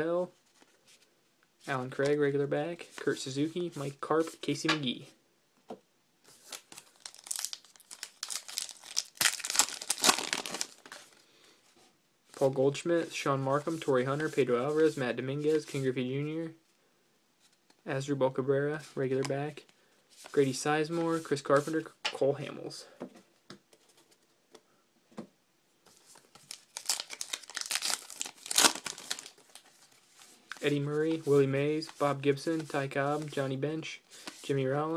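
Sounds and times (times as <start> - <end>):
wrapper tearing and crinkling: 6.5 - 11.0, 26.4 - 29.7.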